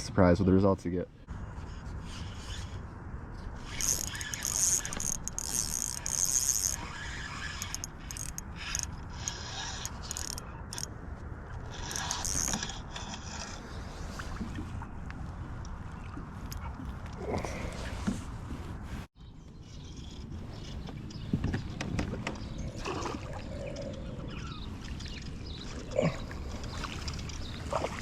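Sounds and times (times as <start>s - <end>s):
fishing reel gear whirring: 3.5s - 10.9s, 11.6s - 13.6s.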